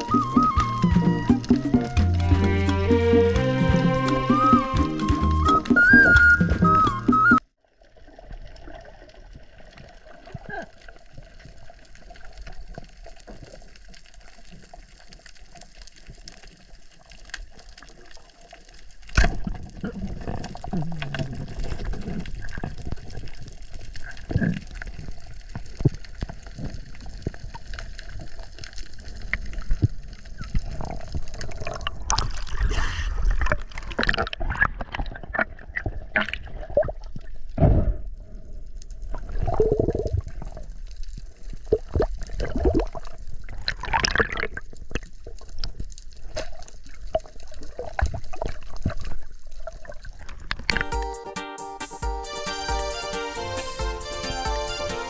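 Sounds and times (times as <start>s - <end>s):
underwater gurgling and sloshing: 5.7s - 50.8s.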